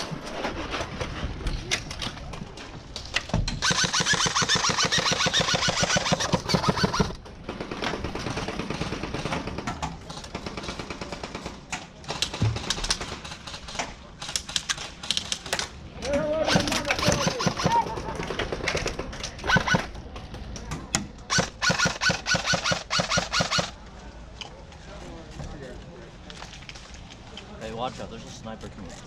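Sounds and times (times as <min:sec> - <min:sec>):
airsoft gun full-auto burst: 0:03.6 - 0:07.8, 0:16.4 - 0:17.9, 0:21.3 - 0:23.8.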